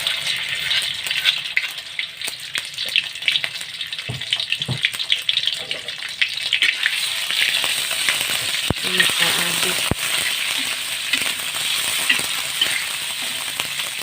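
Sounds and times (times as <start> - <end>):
spices sizzling in hot oil: 0.0 - 14.0
dull knocks: 4.1 - 4.9.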